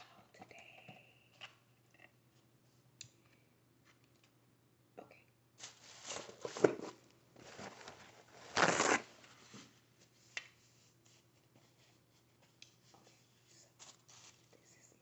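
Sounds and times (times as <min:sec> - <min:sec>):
rustling and crackling of food: 0:05.6 - 0:15.0.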